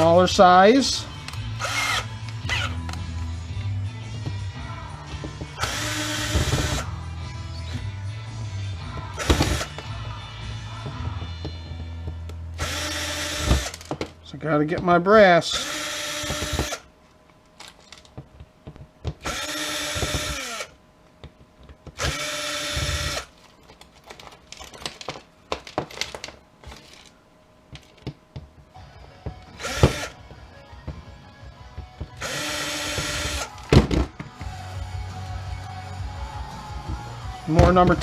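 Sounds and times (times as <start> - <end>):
power drill running: 1.5 - 2.8, 5.6 - 6.9, 9.2 - 9.8, 12.6 - 13.9, 15.5 - 16.9, 19.2 - 20.8, 22.0 - 23.3, 29.5 - 30.2, 32.2 - 33.7.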